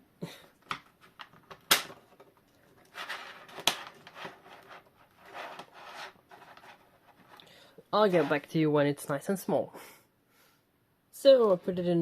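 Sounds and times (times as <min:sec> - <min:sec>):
scraping and rustling: 0:02.1 - 0:07.4, 0:08.0 - 0:08.6.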